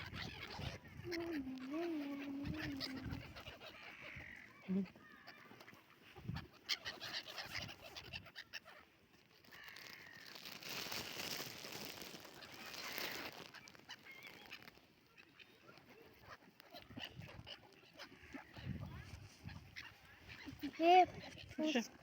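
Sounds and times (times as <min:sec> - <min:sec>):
birds pecking clicks: 0:09.4 - 0:18.6
rustling: 0:09.4 - 0:21.8.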